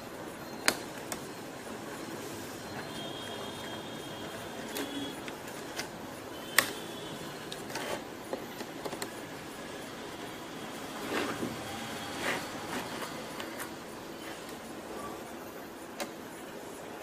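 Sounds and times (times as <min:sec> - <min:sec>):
clicks of small laptop parts: 0:06.5 - 0:06.8.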